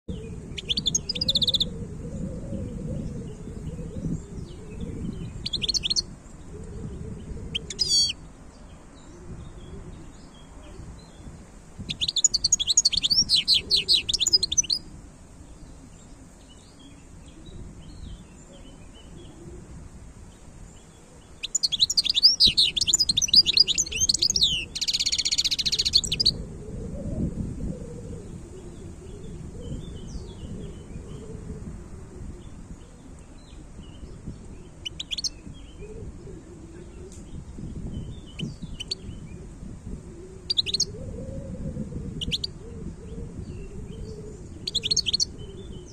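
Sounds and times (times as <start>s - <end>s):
goldfinch twittering song: 0.5s - 1.7s, 5.2s - 6.1s, 7.5s - 8.2s, 11.9s - 14.8s, 21.4s - 26.3s, 34.6s - 35.8s, 38.0s - 39.1s, 40.5s - 40.9s, 42.2s - 42.5s, 44.6s - 45.9s.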